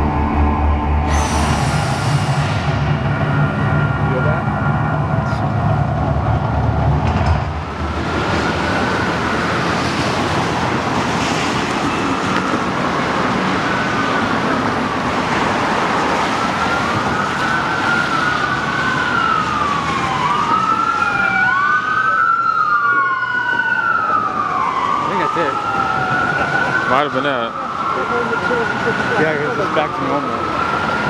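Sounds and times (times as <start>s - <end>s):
steady rushing noise: 0.0s - 20.2s
emergency sirens wailing: 0.0s - 31.0s.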